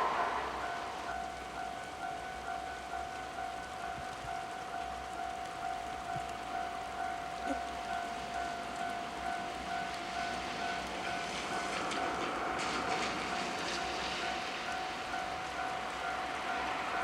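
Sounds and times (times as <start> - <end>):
rain falling: 0.0 - 17.0
train passing: 0.0 - 17.0
train wheels clicking on rails: 7.9 - 17.0.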